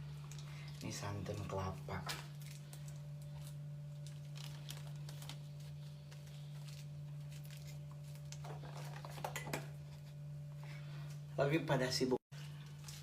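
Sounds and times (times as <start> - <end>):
low hum: 0.0 - 13.0
containers clicking and rustling: 7.3 - 9.8.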